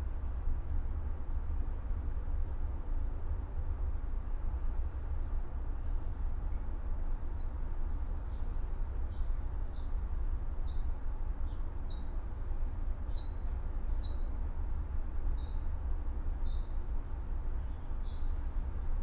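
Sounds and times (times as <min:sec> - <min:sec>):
low ambient rumble: 0:00.0 - 0:19.0
songbird chirping: 0:09.1 - 0:10.0, 0:10.6 - 0:12.2, 0:13.1 - 0:15.7, 0:16.4 - 0:16.8, 0:17.6 - 0:19.0.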